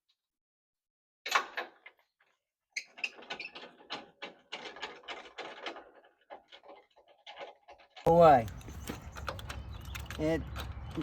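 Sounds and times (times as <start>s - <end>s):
metal clicks and rattles: 2.9s - 11.0s.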